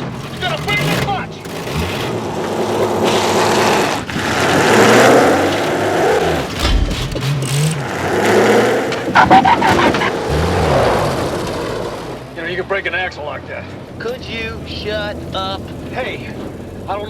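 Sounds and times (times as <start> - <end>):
truck engine revving: 0.0 - 17.0
heavy low thud: 6.5 - 7.5.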